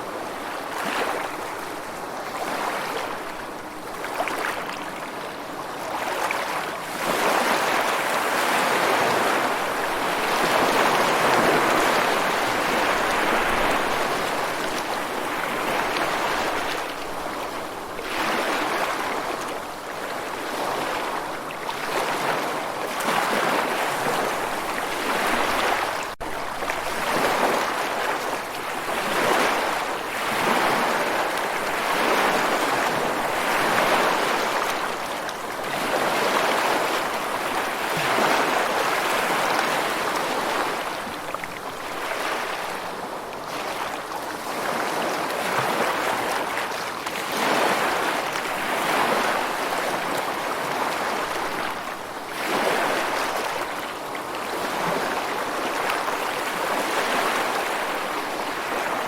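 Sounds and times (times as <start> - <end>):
rushing water: 0.0 - 59.0.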